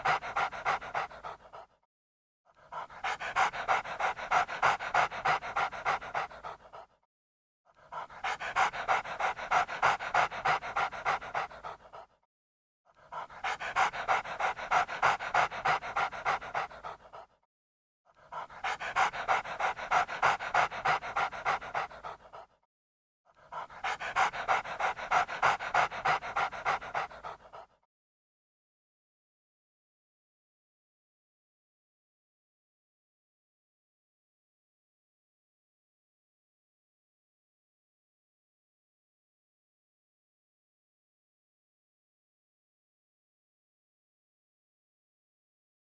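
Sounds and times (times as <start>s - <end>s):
dog panting: 0.0s - 1.8s, 2.6s - 7.0s, 7.8s - 12.2s, 13.0s - 17.4s, 18.2s - 22.6s, 23.4s - 27.8s.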